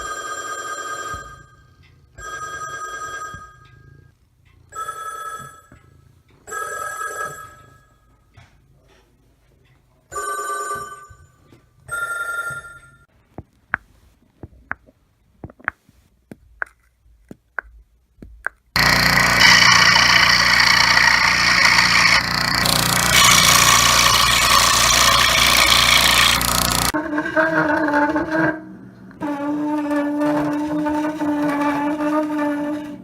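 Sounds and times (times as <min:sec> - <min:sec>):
bell-like telephone ring: 0:00.0 - 0:04.1, 0:06.5 - 0:08.0, 0:10.1 - 0:13.1.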